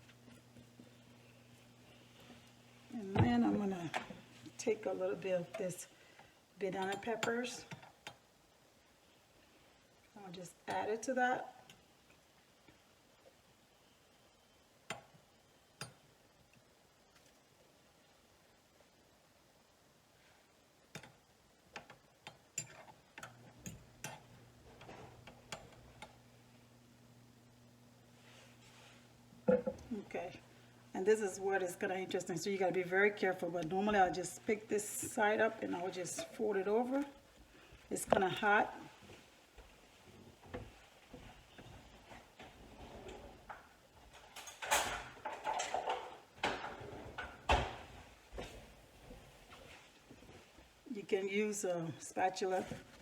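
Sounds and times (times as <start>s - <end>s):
faint low hum: 0.0s - 53.0s.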